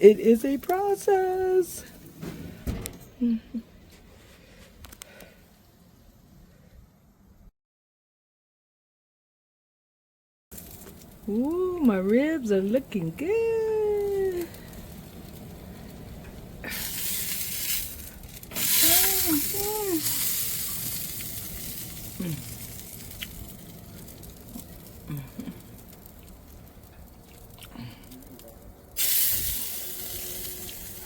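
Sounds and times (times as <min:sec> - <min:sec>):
ribs sizzling on a grill: 0:00.1 - 0:02.1, 0:10.5 - 0:31.0.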